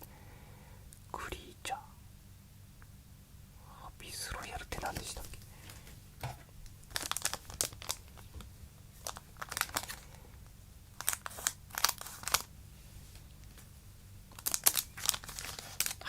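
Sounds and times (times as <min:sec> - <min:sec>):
plastic wrapper crinkling: 0:04.8 - 0:10.3, 0:10.9 - 0:12.5, 0:14.3 - 0:16.0.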